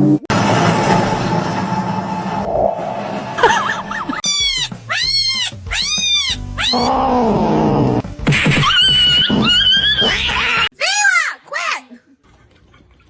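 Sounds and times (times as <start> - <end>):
cat meowing: 4.2 - 7.4.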